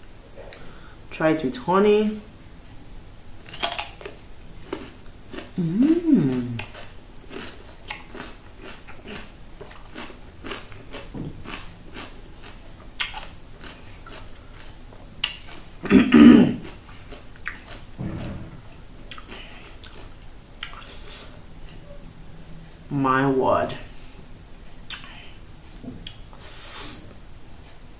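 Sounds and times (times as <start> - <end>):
crunching cucumber chewing: 3.5 - 15.7, 16.5 - 18.4, 19.1 - 21.3
full mouth sound: 5.5 - 6.8.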